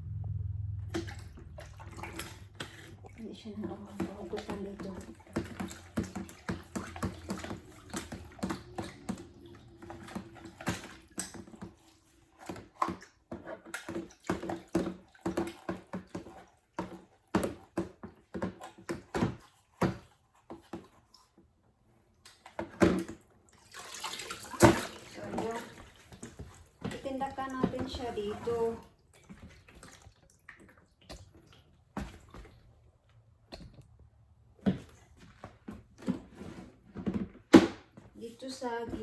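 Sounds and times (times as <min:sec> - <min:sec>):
wet mop swishing on floor: 0:01.6 - 0:12.8, 0:23.8 - 0:28.8.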